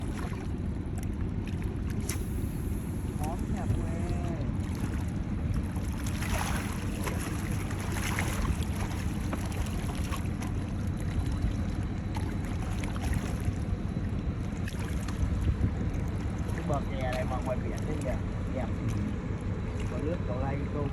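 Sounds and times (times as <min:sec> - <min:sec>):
wind buffeting microphone: 0:14.8 - 0:17.8.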